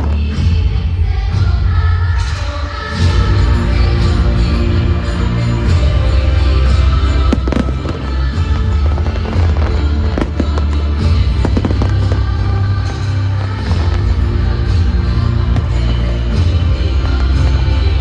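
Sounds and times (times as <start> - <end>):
show music with heavy bass: 2.9 - 18.0
fireworks bursting with bangs: 6.7 - 18.0.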